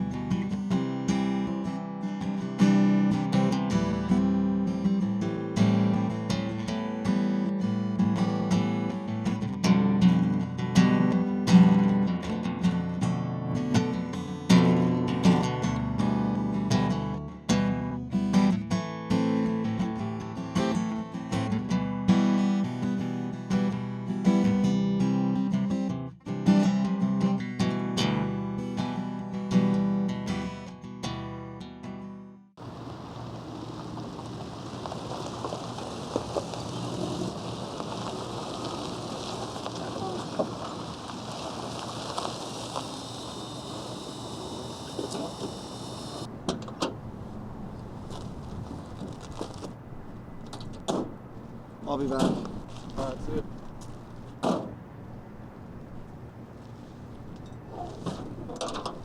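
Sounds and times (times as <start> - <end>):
acoustic guitar strumming: 0.0 - 33.9.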